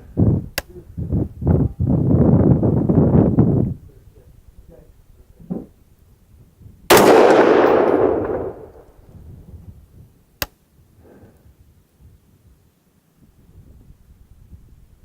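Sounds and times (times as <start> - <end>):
rifle shot: 6.9 - 9.0.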